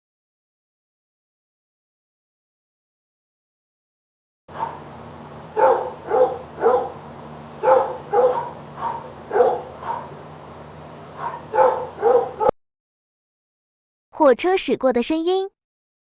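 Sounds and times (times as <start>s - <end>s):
dog barking: 4.5s - 12.5s
faint low hum: 4.5s - 12.5s.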